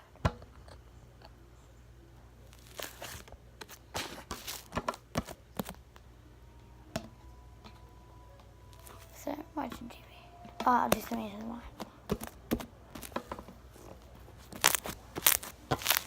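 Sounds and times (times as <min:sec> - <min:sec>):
sticky slime clicks and crackles: 0:02.5 - 0:04.6, 0:14.4 - 0:16.0.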